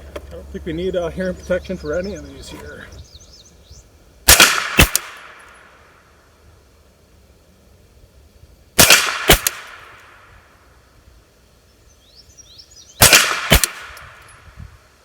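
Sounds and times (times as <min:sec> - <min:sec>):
suppressed pistol shots: 0:04.3 - 0:05.8, 0:08.8 - 0:10.3, 0:13.0 - 0:14.4.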